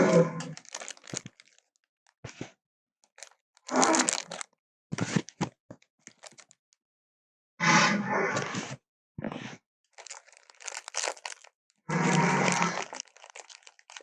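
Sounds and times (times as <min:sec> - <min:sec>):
harsh crunching crackling bursts: 0:00.4 - 0:01.7, 0:03.0 - 0:04.5, 0:06.1 - 0:06.6, 0:10.0 - 0:14.0.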